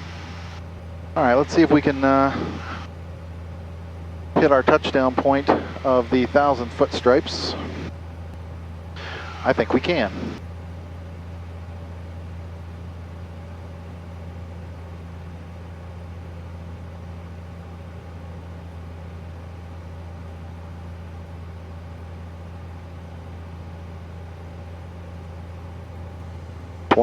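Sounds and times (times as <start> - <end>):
light aircraft engine droning: 0.0 - 27.0.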